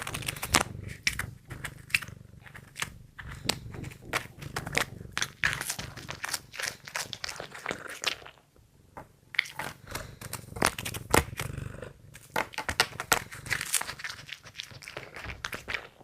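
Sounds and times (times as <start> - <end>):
cat crunching food: 0.0 - 8.4, 9.4 - 16.0
low cat noises: 0.0 - 8.4, 9.5 - 12.4.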